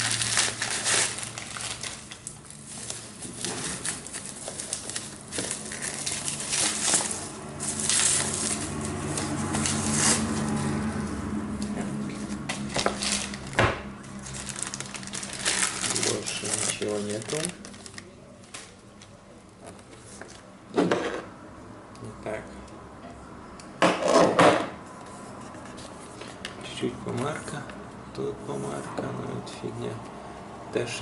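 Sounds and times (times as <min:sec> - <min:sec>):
packaging rustling and crinkling: 0:00.0 - 0:10.8, 0:12.2 - 0:18.8.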